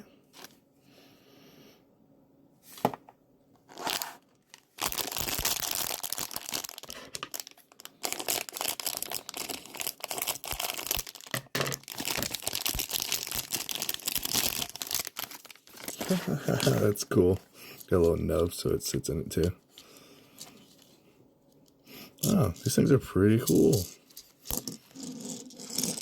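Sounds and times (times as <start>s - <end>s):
plastic bag rustling and crackling: 3.7s - 18.2s.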